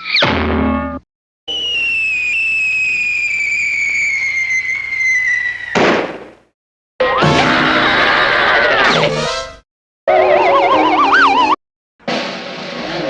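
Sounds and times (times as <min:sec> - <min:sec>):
falling whistle: 0:01.5 - 0:06.4
cartoon explosion burst: 0:05.0 - 0:06.4.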